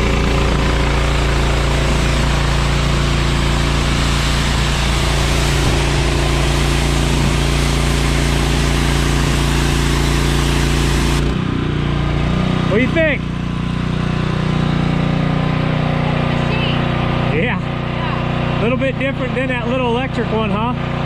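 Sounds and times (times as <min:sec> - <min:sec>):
water jet spraying: 0:00.0 - 0:11.4
pressure washer engine running: 0:00.0 - 0:21.0.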